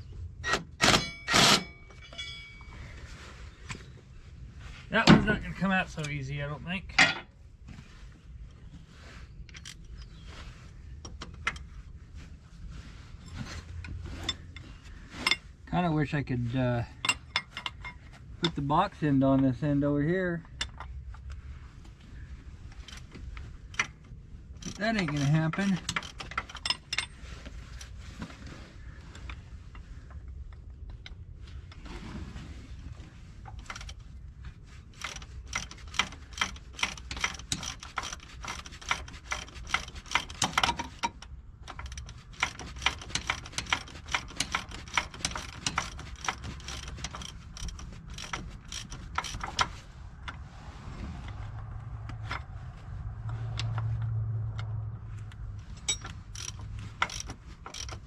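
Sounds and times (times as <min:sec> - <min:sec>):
ratchet wrench clicking: 0:24.6 - 0:26.8, 0:35.0 - 0:49.8, 0:55.8 - 0:58.0
low hum: 0:45.4 - 0:58.0.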